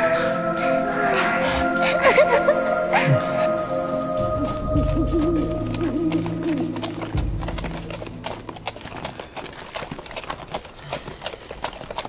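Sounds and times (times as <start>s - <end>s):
film score music: 0.0s - 10.7s
horse hooves clip-clopping: 4.2s - 12.0s.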